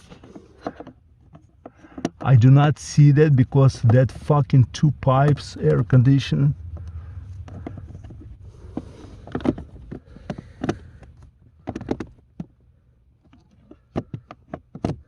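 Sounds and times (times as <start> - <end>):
low steady hum: 0.0 - 15.0
plastic clicks and knocks: 0.1 - 2.3, 6.6 - 12.6, 13.2 - 15.0.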